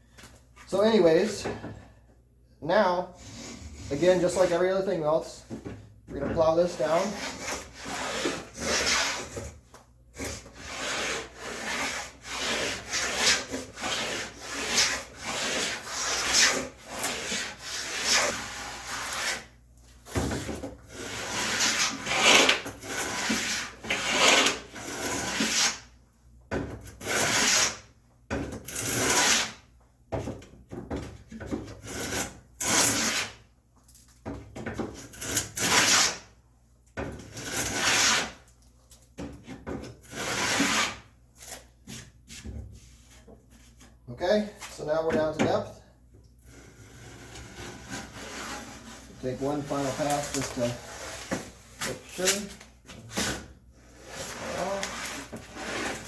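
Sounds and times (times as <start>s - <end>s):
plane blade scraping wood: 6.4s - 9.5s, 10.2s - 19.6s, 20.9s - 25.8s, 26.9s - 27.8s, 28.7s - 29.6s, 31.8s - 33.4s, 35.1s - 36.3s, 37.3s - 38.4s, 40.0s - 41.1s, 46.5s - 52.5s, 53.2s - 56.0s.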